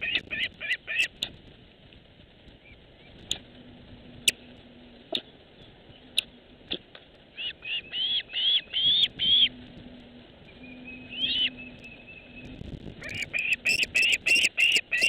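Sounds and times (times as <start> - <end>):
bird chirping: 10.5 - 15.0.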